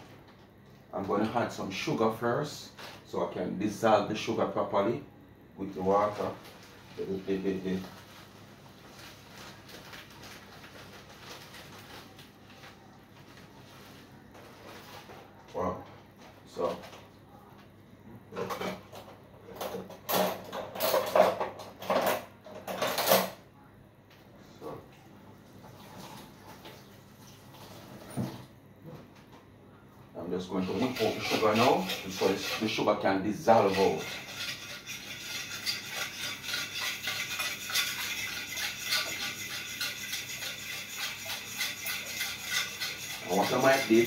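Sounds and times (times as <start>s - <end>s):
sugar scraping against bowl: 30.5s - 44.0s.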